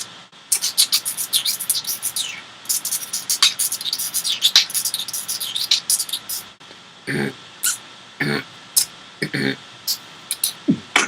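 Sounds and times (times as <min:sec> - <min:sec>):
beatbox rapid high clicks: 0:00.0 - 0:06.6, 0:09.9 - 0:11.0.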